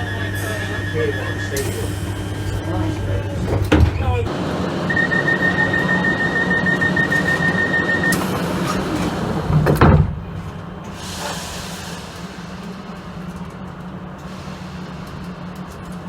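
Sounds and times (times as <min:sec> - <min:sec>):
train steady rumble: 0:00.0 - 0:16.0
sliding train doors thudding shut: 0:02.7 - 0:04.5, 0:05.6 - 0:12.6
rapid high-pitched warning beeping: 0:04.8 - 0:08.3.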